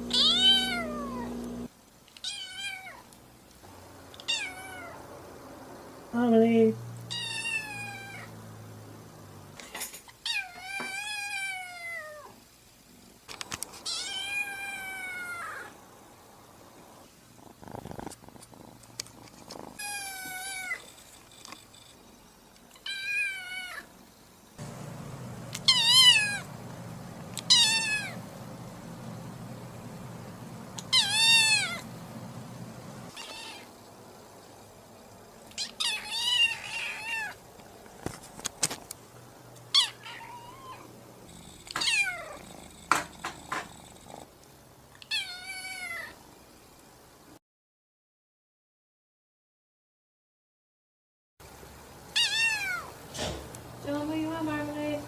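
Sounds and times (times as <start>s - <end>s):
low steady hum: 0.0s - 1.7s, 24.4s - 33.2s
kitten meowing: 0.1s - 1.3s, 4.2s - 5.0s, 7.1s - 8.3s, 13.9s - 15.7s, 25.6s - 26.5s, 27.4s - 28.2s, 30.8s - 31.8s, 33.1s - 33.7s, 35.6s - 37.4s, 41.8s - 42.4s, 52.2s - 52.9s.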